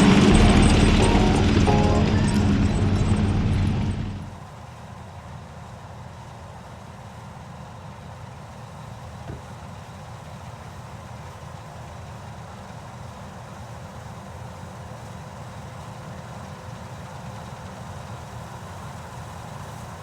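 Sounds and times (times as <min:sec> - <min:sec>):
harvest machinery engine drone: 0:00.0 - 0:04.4.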